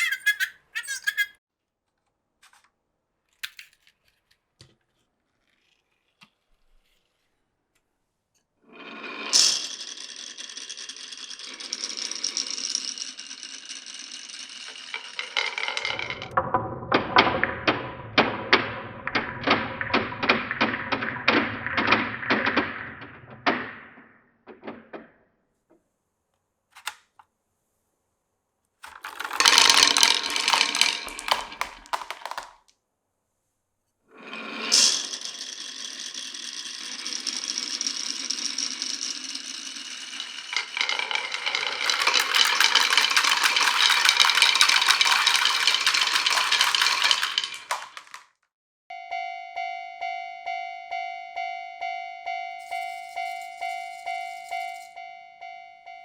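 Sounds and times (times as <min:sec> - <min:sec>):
marble clattering on bumpy track: 0:00.0 - 0:01.3, 0:03.4 - 0:04.2, 0:08.8 - 0:23.9, 0:26.8 - 0:27.1, 0:28.8 - 0:32.7, 0:34.4 - 0:48.4
marbles rolling through marble run: 0:00.0 - 0:01.3, 0:08.7 - 0:23.7, 0:28.8 - 0:32.7, 0:34.2 - 0:48.4, 0:52.6 - 0:55.0.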